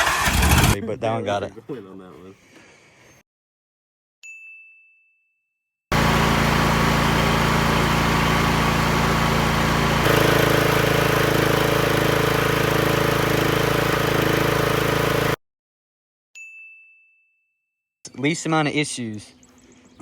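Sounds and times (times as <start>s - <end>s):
lawnmower engine running: 0.0s - 0.8s, 5.9s - 15.4s
second mower engine: 0.0s - 0.8s, 5.9s - 15.4s.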